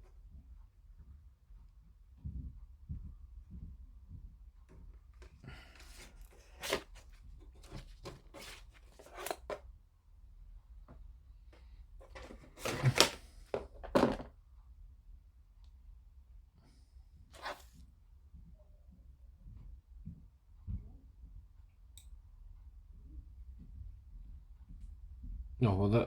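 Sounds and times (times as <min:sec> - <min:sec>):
plastic parts clicking and knocking: 0:12.0 - 0:14.3.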